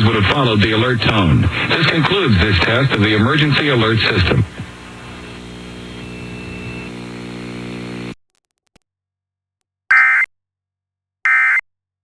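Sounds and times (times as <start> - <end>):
steady buzzing hum: 0.0 - 8.2.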